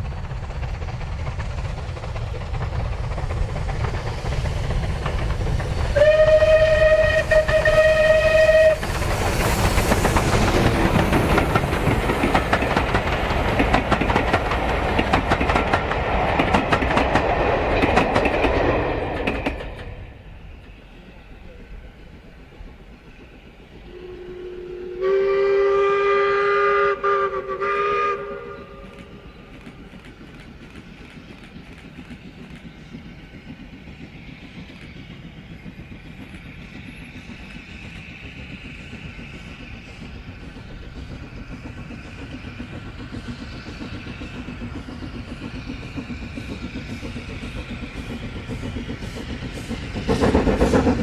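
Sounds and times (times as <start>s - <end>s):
train running with rhythmic beat: 0.0s - 51.0s
steam locomotive whistle: 5.9s - 10.5s, 23.8s - 29.4s.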